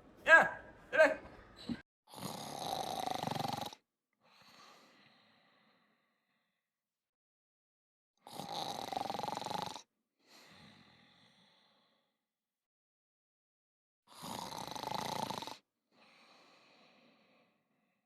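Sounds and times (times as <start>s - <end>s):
cat snoring: 2.1s - 3.8s, 8.2s - 9.9s, 14.1s - 15.6s.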